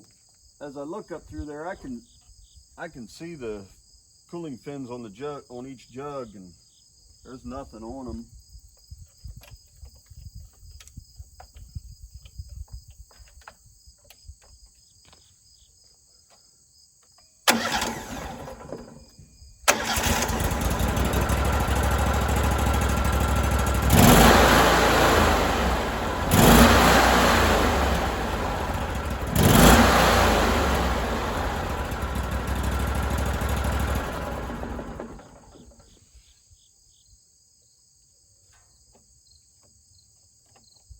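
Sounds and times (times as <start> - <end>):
engine cranking and revving: 17.5 - 19.0, 19.7 - 36.0.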